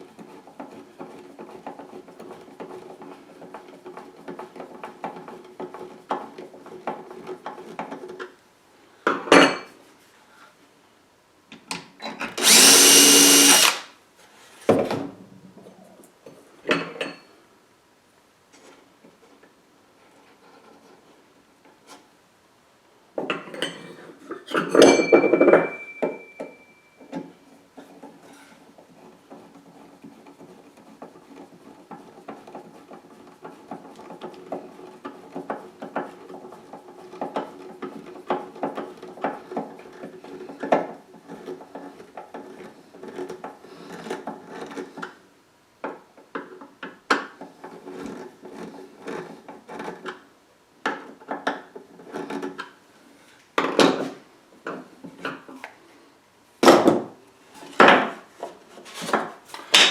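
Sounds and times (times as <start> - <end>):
screws clicking and squeaking: 12.4 - 13.9.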